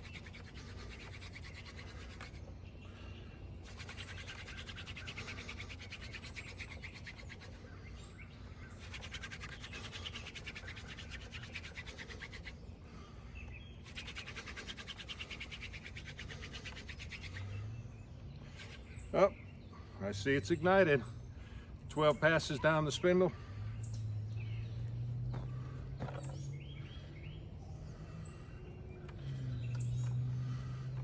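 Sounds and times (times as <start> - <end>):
hand drill spindle rubbing wood: 0.0 - 2.4, 3.7 - 7.4, 8.8 - 12.5.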